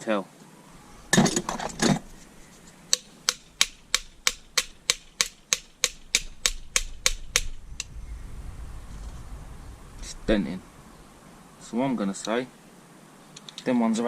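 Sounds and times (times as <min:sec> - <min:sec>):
sharp metal taps: 0:02.9 - 0:07.5.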